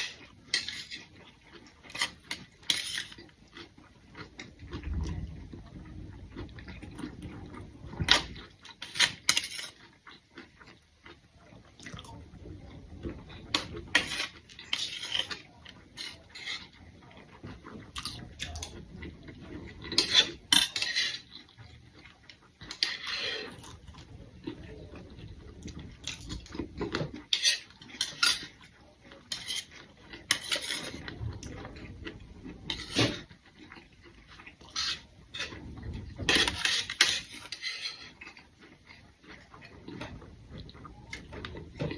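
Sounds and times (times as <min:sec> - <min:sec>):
cutlery clinking against plates: 0:01.9 - 0:03.2, 0:13.5 - 0:16.7, 0:19.9 - 0:21.3, 0:26.0 - 0:28.7, 0:29.3 - 0:31.0, 0:32.7 - 0:33.3, 0:36.2 - 0:38.4.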